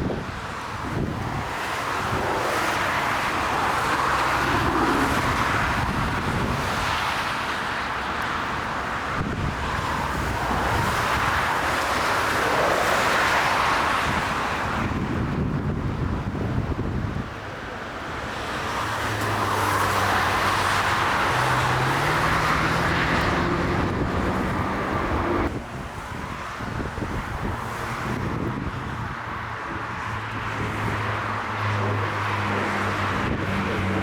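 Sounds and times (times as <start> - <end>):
jet engine roar: 0.8 - 15.5, 18.0 - 26.3.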